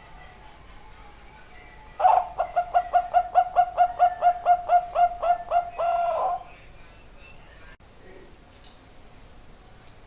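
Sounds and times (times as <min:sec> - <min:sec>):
dove cooing: 0:02.0 - 0:06.5.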